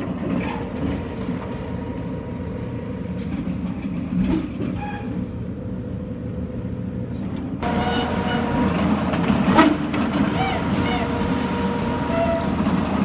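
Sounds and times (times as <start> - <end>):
machinery rumbling: 6.4 - 13.0.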